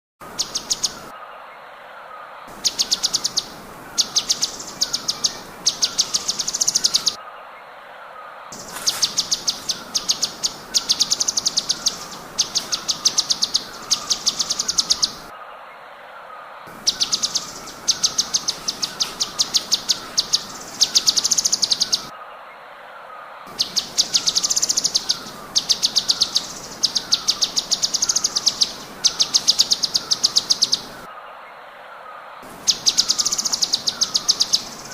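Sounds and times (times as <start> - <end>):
lower falling bird notes: 8.6 - 15.3, 16.6 - 22.1.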